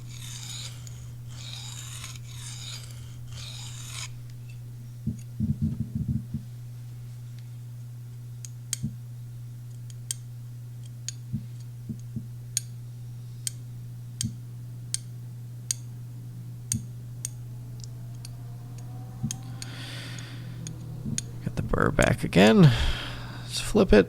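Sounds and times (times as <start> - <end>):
steady low hum: 0.0 - 24.0
knife clicking on sharpening stone: 16.7 - 17.4.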